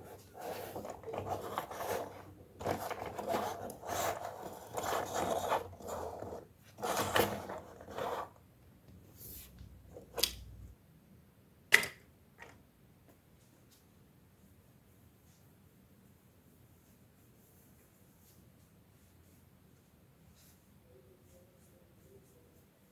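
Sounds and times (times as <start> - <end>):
plastic parts rustling and scraping: 0.0 - 8.4.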